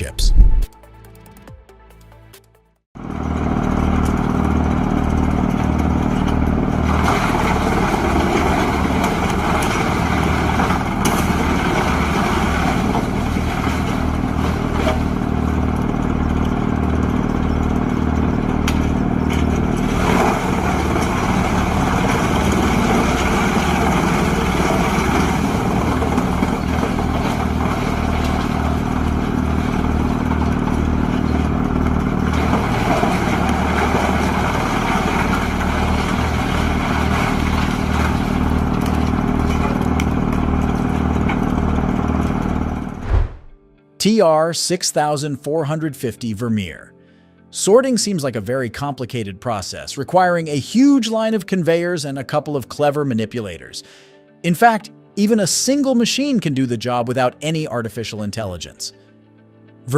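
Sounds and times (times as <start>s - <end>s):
wood chipper diesel engine running: 3.0s - 43.6s, 53.8s - 54.1s.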